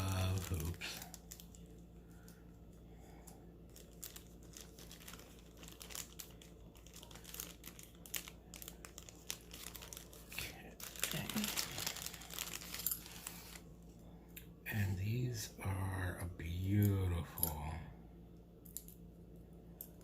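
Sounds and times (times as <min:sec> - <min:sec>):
plastic packaging crinkling: 0:00.0 - 0:13.7.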